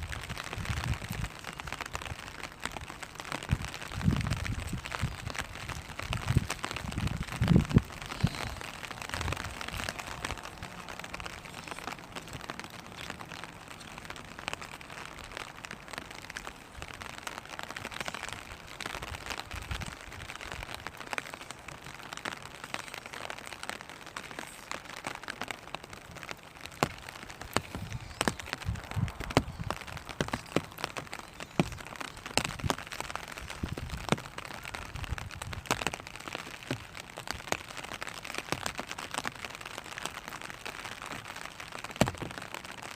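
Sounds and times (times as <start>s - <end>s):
rain patter on umbrella: 0.0s - 42.9s.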